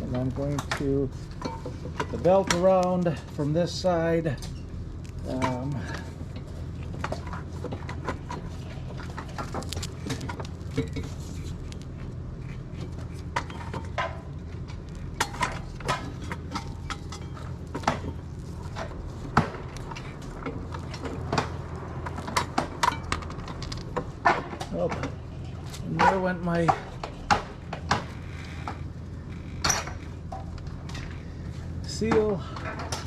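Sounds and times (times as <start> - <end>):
steady low hum: 0.0 - 33.0
metal parts clicking and clinking: 22.1 - 24.1.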